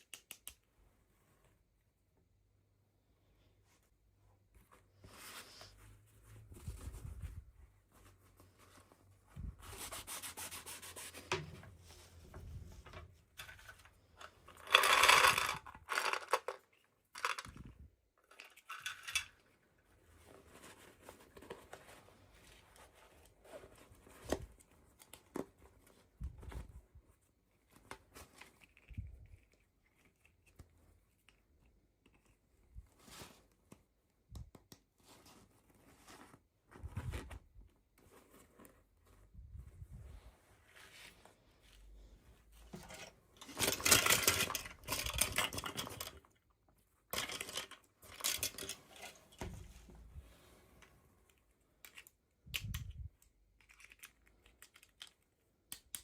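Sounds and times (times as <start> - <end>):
small clicks and taps: 0.0 - 0.7.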